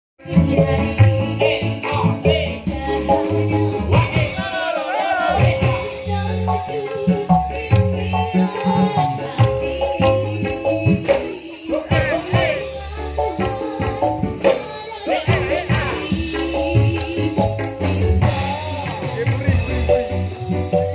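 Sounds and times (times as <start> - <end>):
loud dance music: 0.2 - 3.2, 3.8 - 6.1, 11.2 - 13.3, 14.7 - 20.9
heavy bass line: 0.2 - 11.1, 11.7 - 14.4, 15.1 - 20.9
person singing: 0.2 - 20.9.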